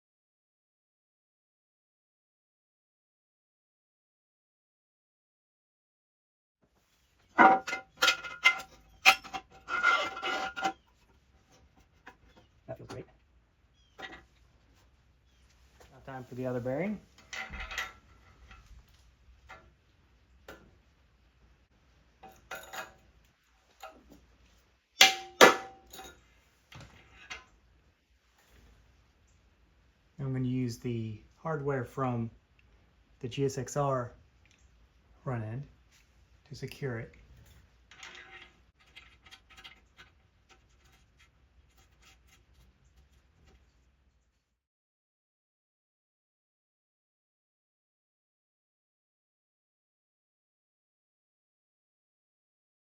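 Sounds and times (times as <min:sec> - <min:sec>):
tools and metal hardware clicking: 0:07.4 - 0:10.9, 0:22.2 - 0:23.0, 0:25.0 - 0:26.2.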